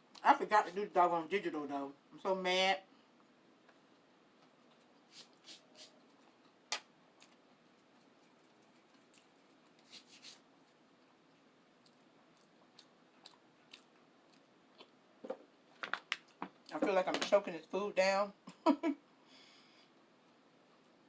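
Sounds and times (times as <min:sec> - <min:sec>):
person chewing food: 0:03.9 - 0:05.0, 0:10.9 - 0:15.0.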